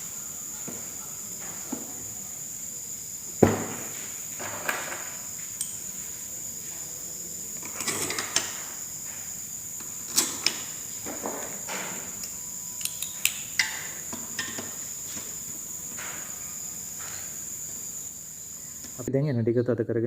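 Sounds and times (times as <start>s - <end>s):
metallic clicks of tools and screws: 5.6s - 5.8s, 7.6s - 8.6s, 11.7s - 14.8s.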